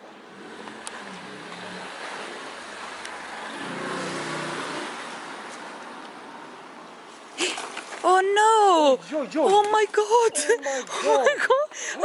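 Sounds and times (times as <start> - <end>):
car driving past: 0.3 - 6.0.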